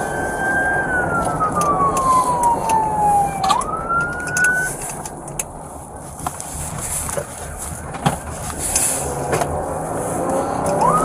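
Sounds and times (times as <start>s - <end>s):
police siren wailing: 0.0s - 4.8s, 10.6s - 11.0s
vehicle engine and road noise: 0.0s - 11.0s.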